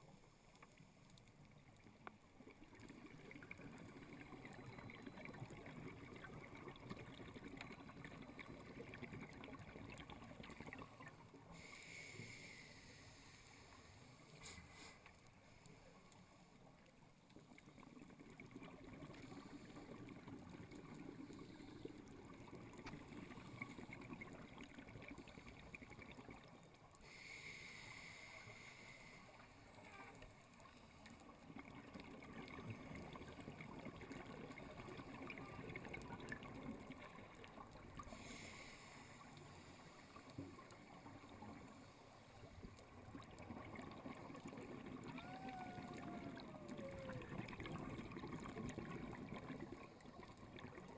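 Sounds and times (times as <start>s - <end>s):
underwater crackle: 0.0s - 50.9s
exhaled bubbles gurgling: 1.7s - 11.7s, 17.4s - 26.8s, 29.9s - 38.7s, 39.3s - 50.9s
regulator breathing-in hiss: 11.5s - 16.0s, 27.0s - 29.6s, 38.1s - 40.3s.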